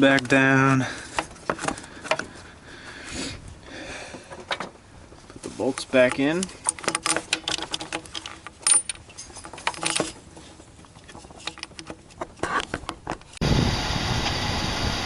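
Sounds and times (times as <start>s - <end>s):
metal tools clinking: 5.3s - 13.0s
engine running: 13.4s - 15.0s.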